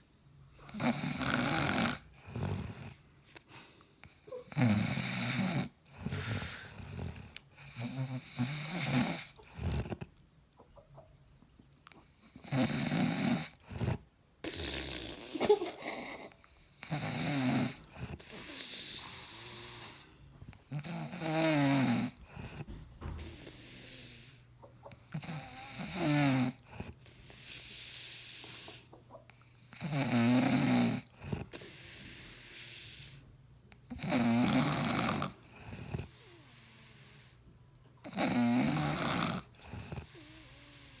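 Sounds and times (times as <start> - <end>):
man snoring: 0.6 - 3.0, 4.5 - 10.0, 12.4 - 15.6, 16.7 - 20.1, 20.7 - 24.4, 25.2 - 28.8, 29.7 - 33.2, 33.9 - 37.0, 38.1 - 41.0.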